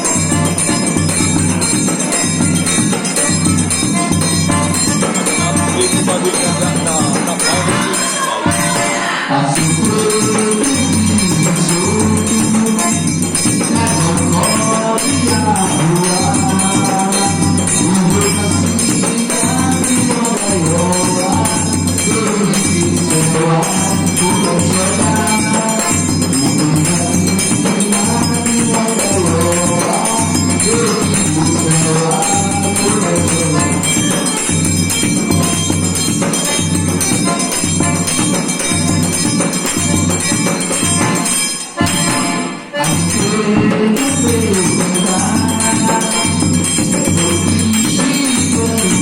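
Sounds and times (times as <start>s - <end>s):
pulsing bass accompaniment: 0.0s - 8.8s
button accordion melody: 0.0s - 49.0s.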